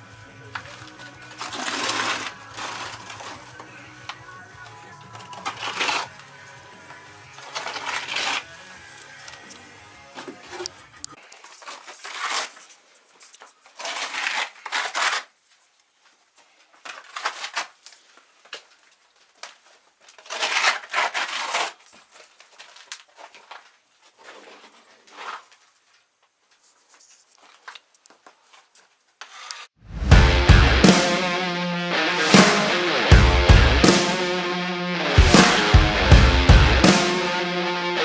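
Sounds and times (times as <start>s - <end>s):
trowel scraping mortar: 29.2s - 29.7s.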